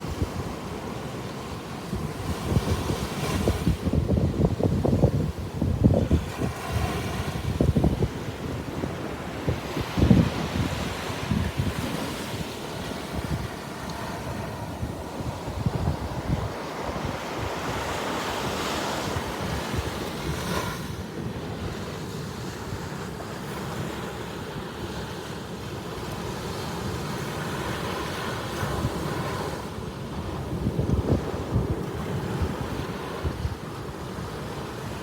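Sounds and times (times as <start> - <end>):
ocean waves breaking on beach: 0.0 - 35.0
wind buffeting microphone: 1.8 - 23.0, 28.4 - 35.0.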